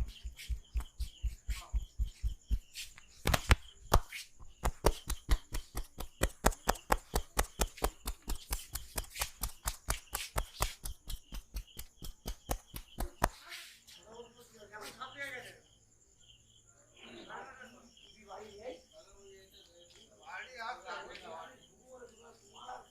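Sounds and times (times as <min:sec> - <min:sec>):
hands tapping and slapping on head: 0:00.0 - 0:13.4.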